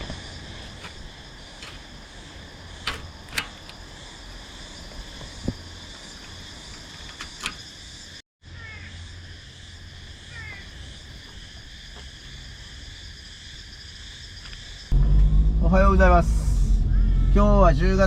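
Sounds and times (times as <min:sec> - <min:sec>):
insects trilling: 0:00.0 - 0:15.0, 0:15.7 - 0:18.0
low hum: 0:14.9 - 0:18.0.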